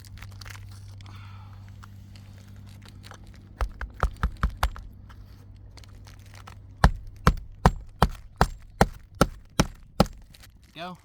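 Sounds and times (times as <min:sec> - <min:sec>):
hammer driving nails into shingle: 0:03.6 - 0:05.0, 0:06.8 - 0:10.5.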